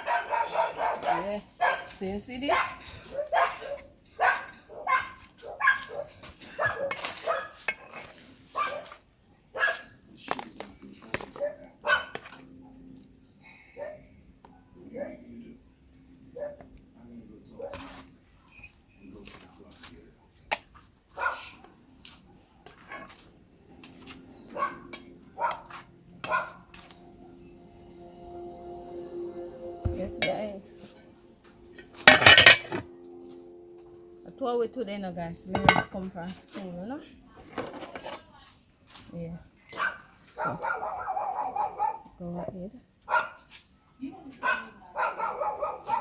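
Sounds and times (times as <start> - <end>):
dog barking: 0.0 - 7.7, 8.5 - 9.9, 11.3 - 12.8, 13.8 - 15.2, 16.3 - 16.7, 17.5 - 18.0, 21.1 - 21.7, 24.5 - 26.7, 39.7 - 42.2, 43.0 - 46.0.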